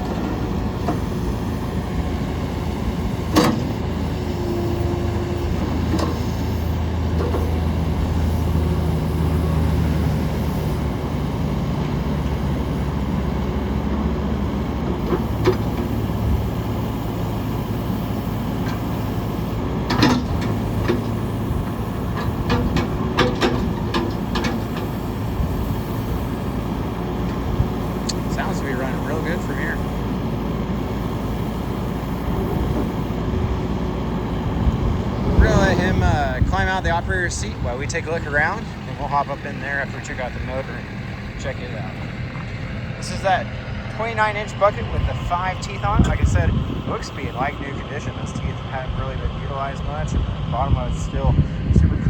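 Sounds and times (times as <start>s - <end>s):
diesel engine running: 0.0s - 52.0s
short clanks: 3.3s - 3.7s, 19.8s - 21.2s.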